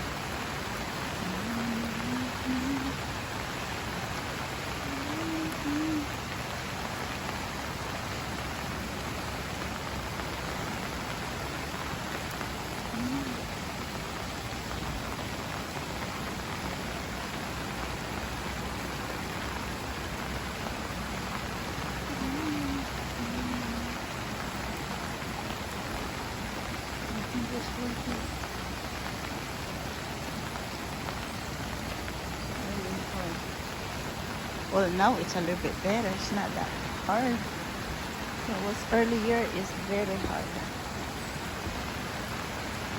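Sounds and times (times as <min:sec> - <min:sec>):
faint low-pitched calls: 0:00.0 - 0:07.7, 0:16.5 - 0:42.9
steady rain pattering: 0:00.0 - 0:42.9.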